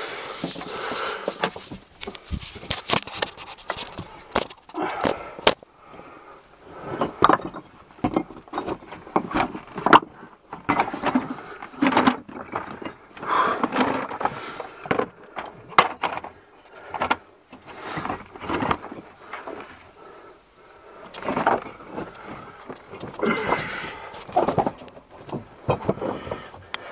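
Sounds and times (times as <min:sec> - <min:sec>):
close handling noise: 0:00.0 - 0:05.7, 0:06.8 - 0:19.9, 0:20.9 - 0:26.9
bricks knocking and scraping: 0:00.4 - 0:05.6, 0:06.8 - 0:13.0, 0:21.1 - 0:26.7.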